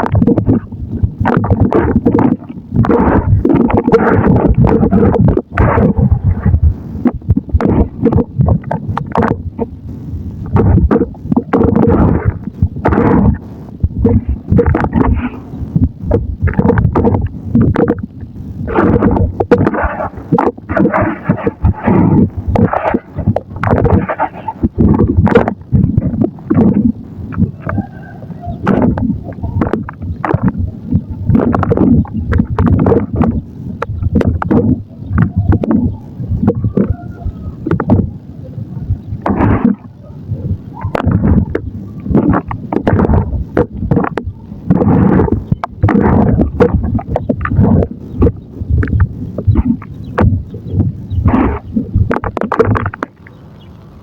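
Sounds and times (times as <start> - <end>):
mud clicks and pops: 0.0 - 54.0
wet mud squelching: 10.4 - 38.2, 38.9 - 53.4.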